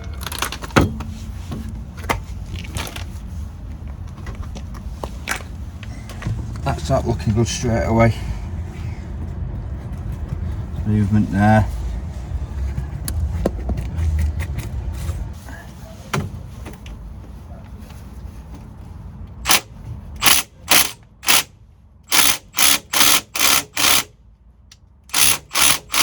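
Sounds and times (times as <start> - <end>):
socket ratchet clicking: 19.4 - 21.5, 22.1 - 24.1, 25.1 - 26.0.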